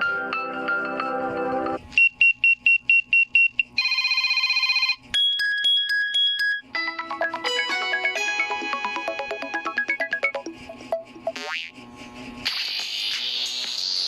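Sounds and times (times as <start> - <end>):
phone ringtone melody: 3.8 - 11.5
rapid electronic trill: 8.4 - 11.8, 12.5 - 14.0.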